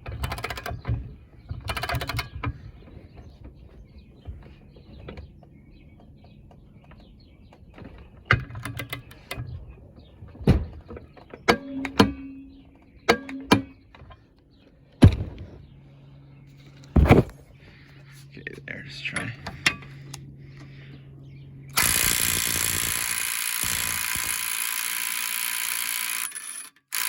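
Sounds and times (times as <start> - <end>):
torque wrench metallic clicks: 1.6 - 2.4.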